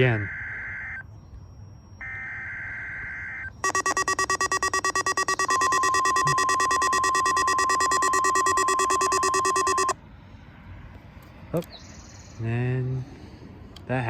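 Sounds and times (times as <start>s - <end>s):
steady warning tone: 0.0s - 10.0s
radio alert buzzing in pulses: 2.0s - 10.0s
harsh two-tone data screech: 3.3s - 10.0s.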